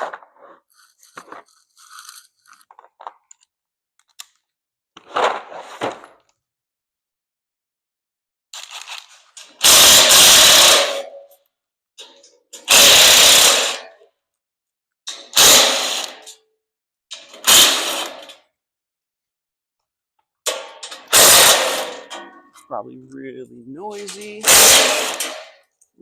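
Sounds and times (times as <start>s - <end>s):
power tool bursts: 9.6s - 11.1s, 12.7s - 14.0s, 15.3s - 16.3s, 17.4s - 18.3s, 21.1s - 22.0s, 24.4s - 25.5s.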